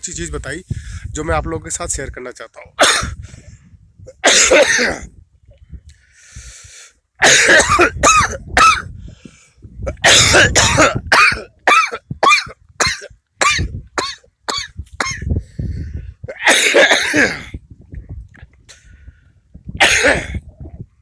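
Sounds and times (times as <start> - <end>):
man coughing: 2.8 - 3.2, 4.1 - 5.1, 7.2 - 8.9, 9.8 - 15.3, 16.2 - 17.6, 19.8 - 20.4.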